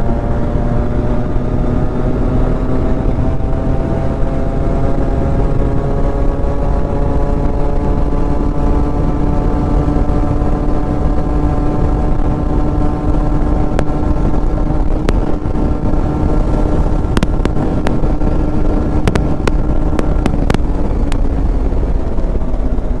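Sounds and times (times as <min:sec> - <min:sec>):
two-stroke motorcycle engine running: 0:00.0 - 0:23.0
sharp clicks: 0:19.0 - 0:21.3.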